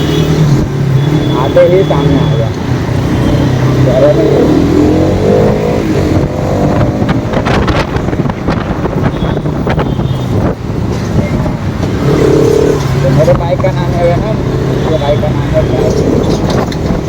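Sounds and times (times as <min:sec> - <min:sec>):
motorcycle engine accelerating: 0:02.0 - 0:09.0, 0:11.5 - 0:17.0
wind buffeting microphone: 0:05.1 - 0:14.8, 0:15.6 - 0:17.0.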